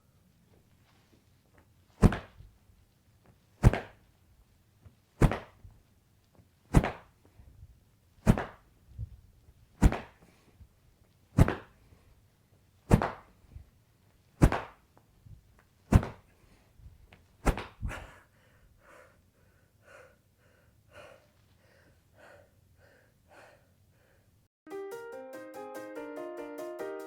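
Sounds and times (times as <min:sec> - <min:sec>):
swing trainer stick whooshing: 0:02.0 - 0:02.5, 0:03.6 - 0:04.0, 0:05.2 - 0:05.7, 0:06.7 - 0:07.1, 0:08.2 - 0:09.1, 0:09.8 - 0:10.2, 0:11.4 - 0:11.8, 0:12.9 - 0:13.6, 0:14.4 - 0:14.8, 0:15.9 - 0:16.3, 0:17.4 - 0:18.1.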